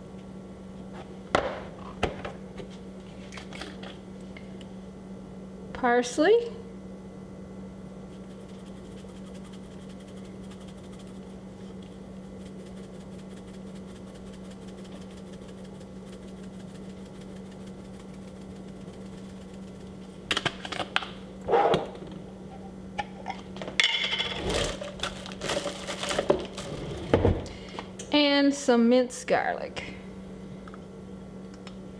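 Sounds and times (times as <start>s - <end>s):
steady low hum: 0.0s - 31.9s
kitchen containers and utensils clinking: 23.2s - 27.1s.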